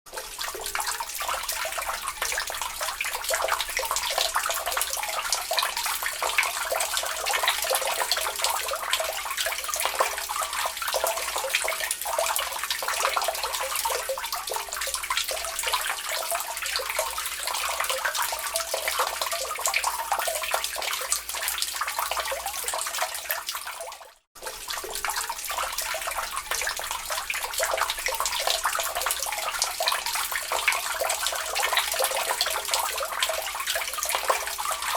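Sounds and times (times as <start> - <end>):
water dripping and spattering: 0.1 - 34.9
rainwater rushing through gutters: 24.4 - 34.9.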